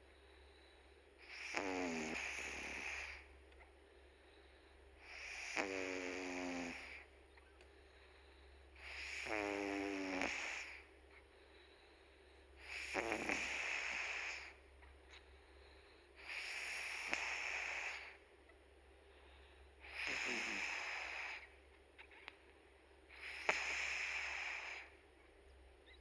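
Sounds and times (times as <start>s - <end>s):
cat snoring: 1.2s - 3.3s, 5.0s - 7.1s, 8.8s - 10.9s, 12.6s - 14.6s, 16.2s - 18.2s, 19.8s - 21.5s, 23.1s - 24.9s.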